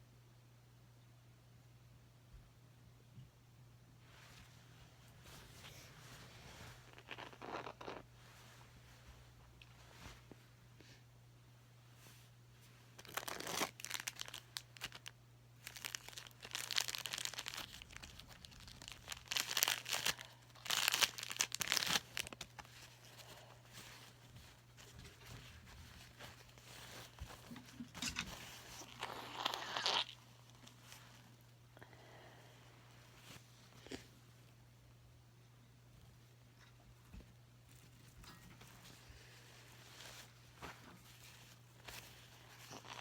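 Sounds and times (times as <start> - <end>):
tissue crinkling: 13.0 - 31.2, 37.7 - 43.0.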